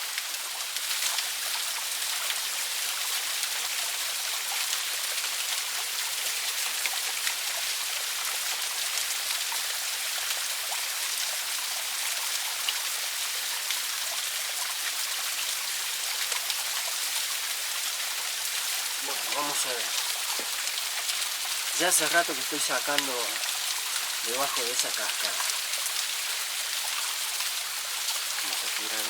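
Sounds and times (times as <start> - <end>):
water drips and splashes: 0.0 - 29.0
waterfall splashing: 15.1 - 29.0.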